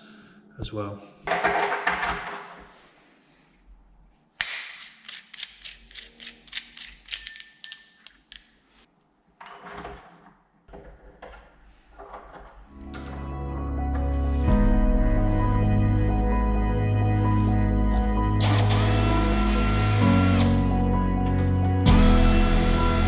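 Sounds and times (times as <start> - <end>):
metal screws clinking: 4.6 - 8.8.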